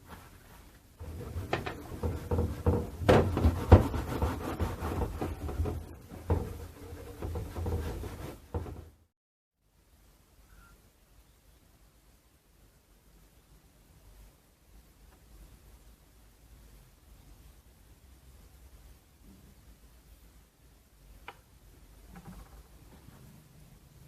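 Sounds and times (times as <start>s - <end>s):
hand rubbing and scraping object: 0.0s - 9.1s.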